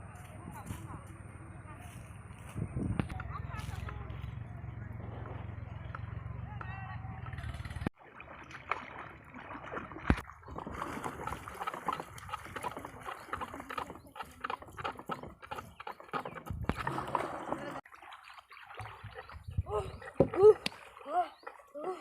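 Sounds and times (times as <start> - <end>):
water sloshing and gurgling: 7.1 - 22.0.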